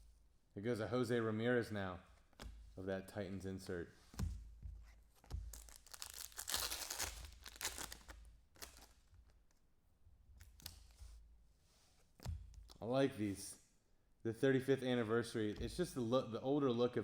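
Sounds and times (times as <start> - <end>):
plastic foil wrapper tearing: 5.5 - 9.0.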